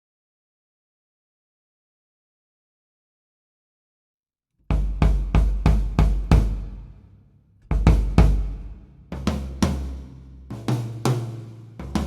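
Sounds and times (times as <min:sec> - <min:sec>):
deep drum hits: 0:04.7 - 0:06.9, 0:07.7 - 0:10.0.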